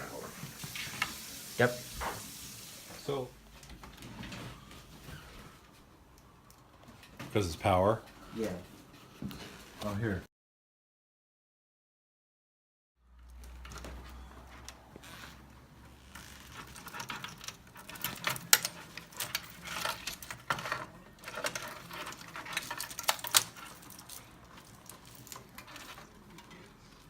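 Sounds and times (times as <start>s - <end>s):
hard parts clicking and rattling: 13.2s - 26.8s.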